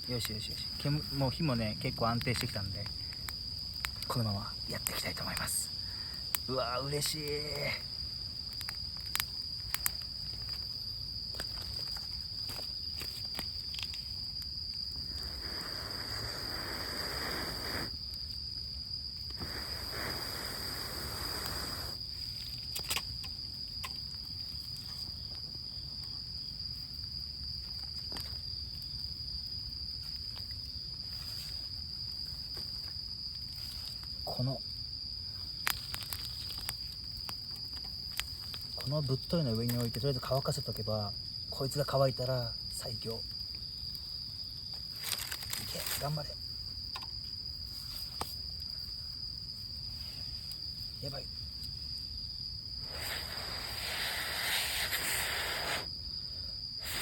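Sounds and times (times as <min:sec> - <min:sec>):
campfire crackling and popping: 0:00.0 - 0:18.4, 0:19.1 - 0:22.1, 0:35.5 - 0:38.9
insect trill: 0:00.0 - 0:57.0
wet wood hissing: 0:15.0 - 0:18.0, 0:19.3 - 0:22.2, 0:52.8 - 0:56.0, 0:56.8 - 0:57.0.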